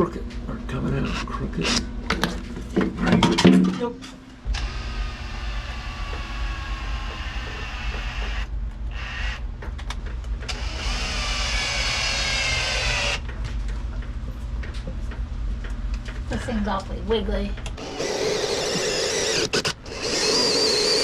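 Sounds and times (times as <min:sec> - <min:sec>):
steady low hum: 0:00.0 - 0:21.0
drill-driver motor whining: 0:04.6 - 0:09.4, 0:10.5 - 0:13.2, 0:17.8 - 0:21.0.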